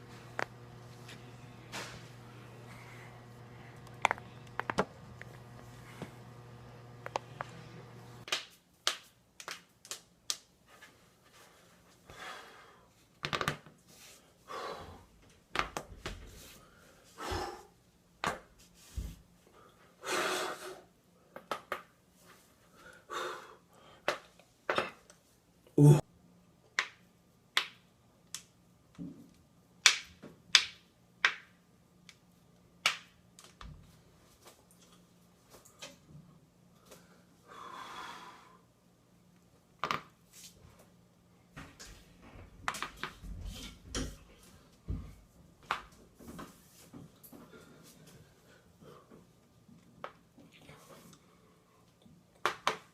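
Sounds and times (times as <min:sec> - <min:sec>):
person breathing: 0:02.2 - 0:04.4, 0:12.0 - 0:13.0, 0:36.8 - 0:38.7.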